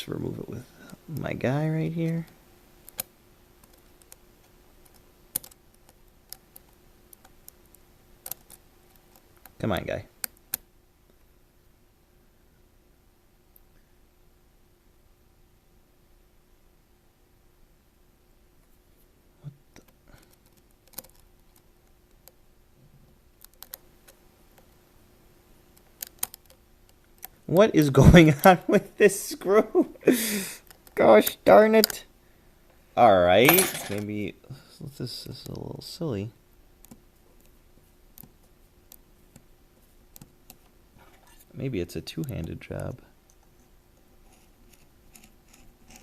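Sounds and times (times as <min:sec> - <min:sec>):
small tool clicking on metal: 0:25.8 - 0:27.3.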